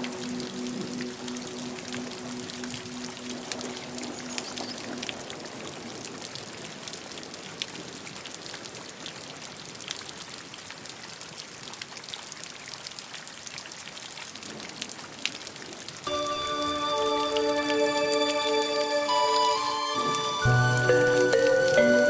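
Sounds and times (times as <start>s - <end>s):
falling water pattering: 0.0s - 9.1s, 14.4s - 22.0s.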